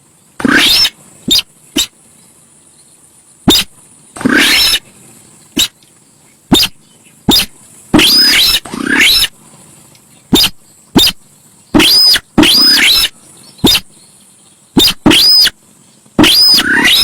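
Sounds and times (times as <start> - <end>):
harsh bird calls: 0.3 - 17.0
bird sharp abrupt notes: 0.4 - 2.0, 3.5 - 4.9, 6.5 - 9.4, 10.3 - 13.9, 14.8 - 15.6, 16.2 - 17.0.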